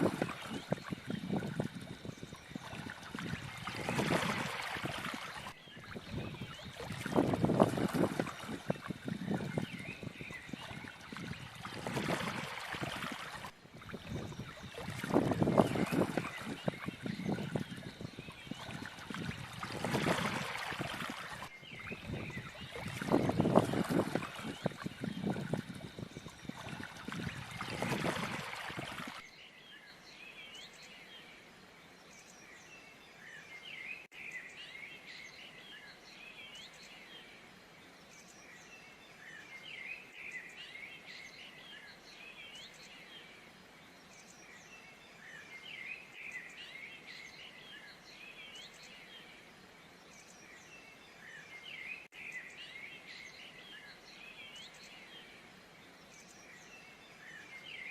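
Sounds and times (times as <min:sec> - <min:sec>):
small birds chirping: 0:00.0 - 0:29.3.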